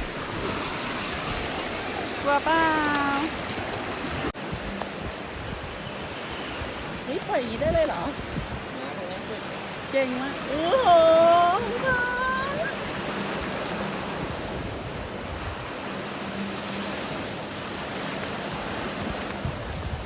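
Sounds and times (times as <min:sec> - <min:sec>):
sea surf washing on shore: 0:00.0 - 0:20.0
person speaking: 0:08.8 - 0:12.8.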